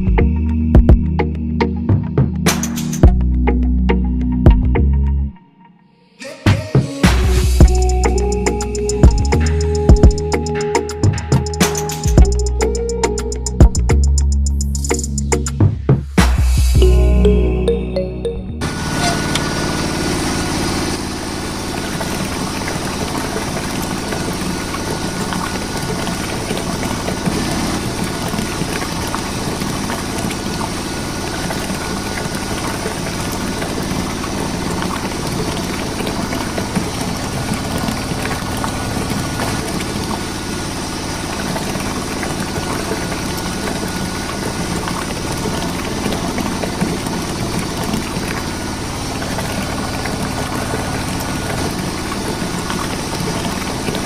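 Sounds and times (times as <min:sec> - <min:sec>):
motor running steadily: 0:18.6 - 0:54.0.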